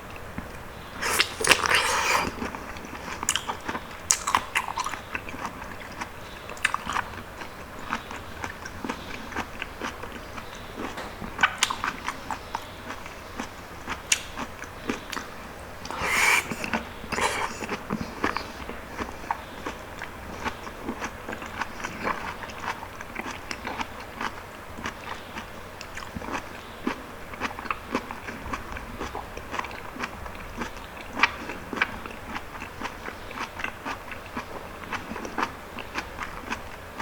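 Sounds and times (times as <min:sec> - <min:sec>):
chewing juicy fruit: 0:00.1 - 0:37.0
wet mouth clicks and squelches: 0:01.0 - 0:02.5, 0:15.1 - 0:17.8.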